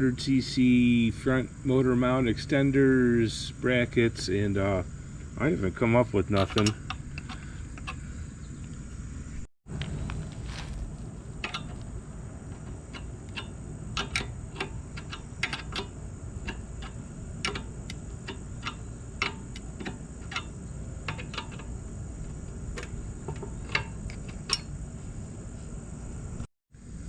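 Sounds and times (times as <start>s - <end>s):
low background rumble: 0.0s - 27.0s
metallic tool clicks and taps: 12.9s - 20.5s.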